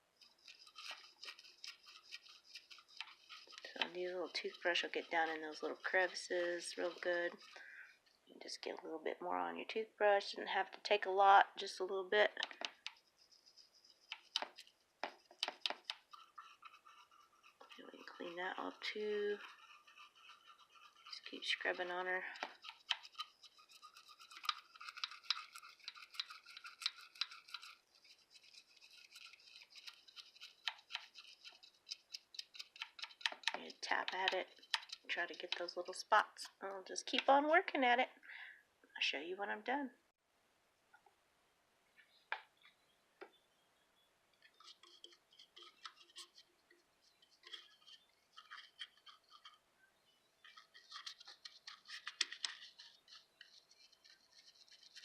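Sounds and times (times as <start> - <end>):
toothbrush scrubbing: 0.0 - 8.6, 12.4 - 37.2, 44.5 - 49.6, 50.4 - 55.0.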